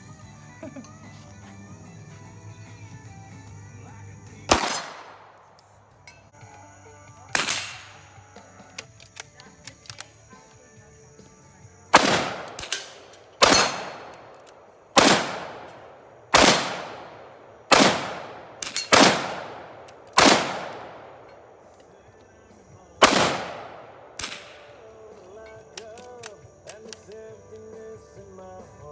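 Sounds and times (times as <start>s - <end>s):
gunshots with echo: 4.5s - 5.5s, 7.3s - 8.0s, 11.9s - 21.7s, 23.0s - 25.2s.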